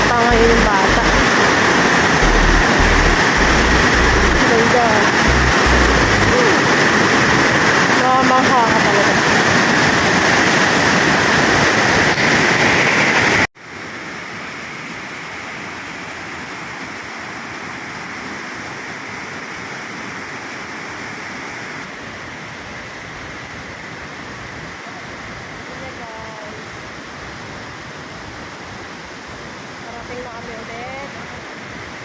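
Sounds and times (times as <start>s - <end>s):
waterfall rushing: 0.0s - 13.5s.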